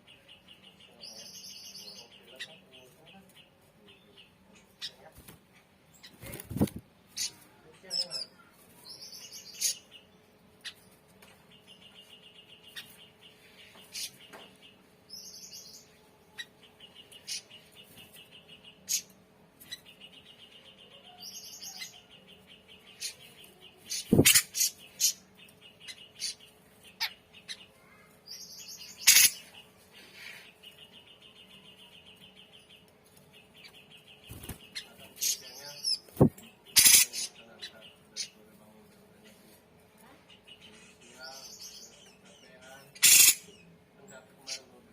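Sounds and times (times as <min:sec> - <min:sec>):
bird buzzy rattling calls: 0:23.9 - 0:25.2, 0:29.0 - 0:29.4, 0:36.2 - 0:37.3, 0:43.0 - 0:43.4.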